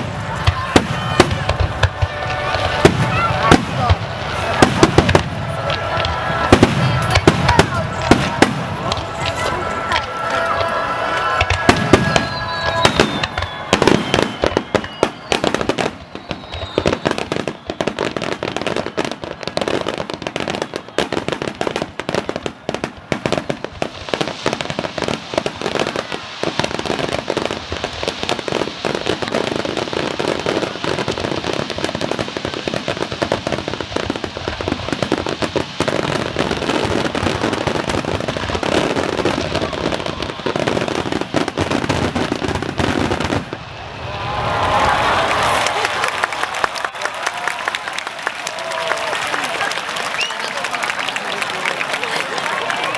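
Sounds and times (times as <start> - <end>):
fireworks popping and crackling: 0.0 - 52.9
falling firework whistles: 0.4 - 21.6.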